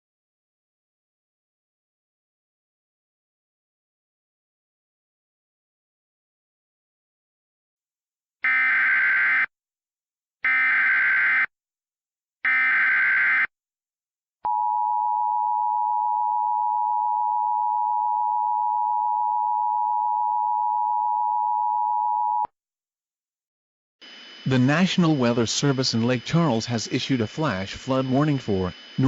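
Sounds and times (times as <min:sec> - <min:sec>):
steady alert tone: 0:24.5 - 0:29.0.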